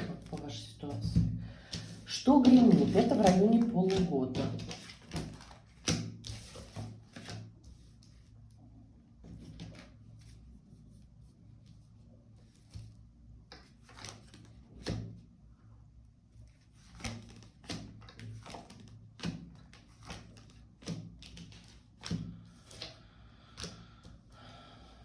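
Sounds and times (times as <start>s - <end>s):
cards tapping on a table: 1.7s - 7.4s.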